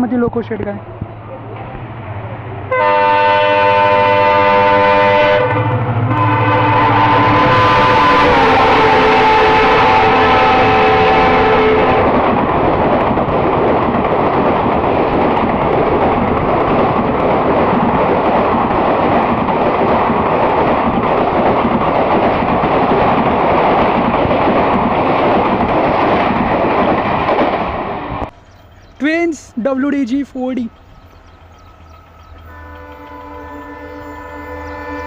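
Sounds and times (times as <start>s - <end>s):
train coaches rushing past: 0.0s - 35.0s
locomotive horn chord: 2.7s - 12.1s, 32.4s - 35.0s.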